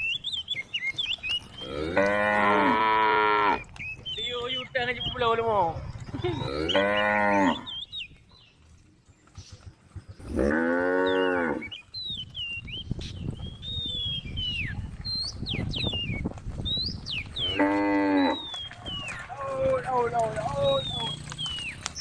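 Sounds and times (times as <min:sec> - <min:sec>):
cows mooing: 0:01.5 - 0:03.7, 0:06.1 - 0:07.8, 0:10.2 - 0:11.8, 0:17.4 - 0:21.3.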